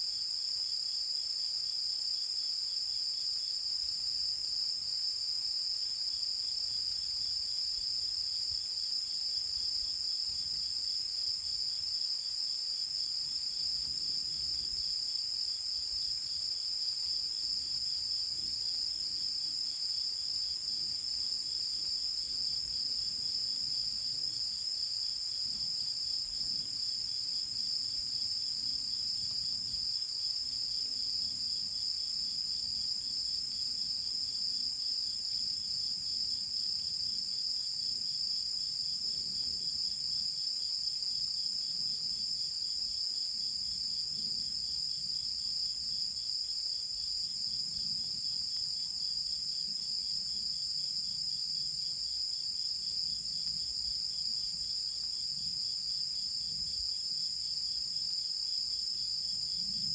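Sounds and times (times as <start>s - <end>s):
night insects chirring: 0.0s - 59.9s.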